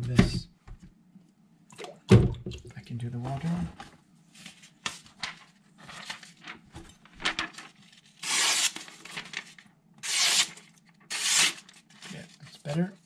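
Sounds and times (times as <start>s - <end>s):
newspaper rustling: 4.3s - 12.9s
knife slicing through newspaper: 8.2s - 8.9s, 10.0s - 12.1s.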